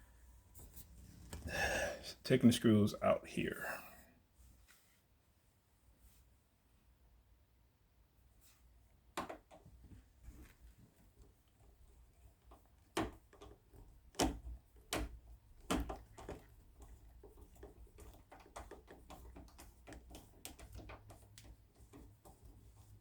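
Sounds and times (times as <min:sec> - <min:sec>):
screw ticking and scraping: 0:12.4 - 0:23.0.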